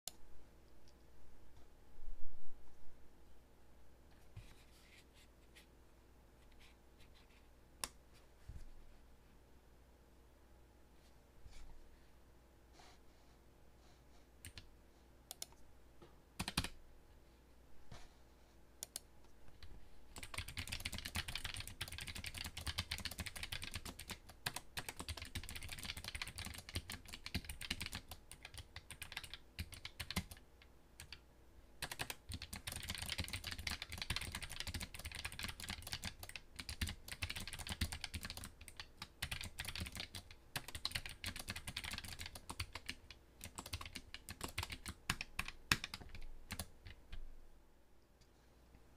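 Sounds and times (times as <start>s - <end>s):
mechanical keyboard typing: 16.4s - 16.8s, 20.2s - 30.4s, 31.0s - 31.2s, 31.8s - 47.1s.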